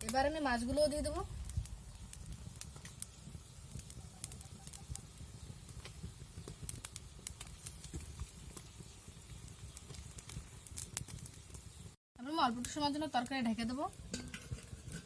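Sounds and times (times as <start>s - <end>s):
curry boiling in a pan: 0.1s - 15.0s
pops and crackles: 1.1s - 11.9s.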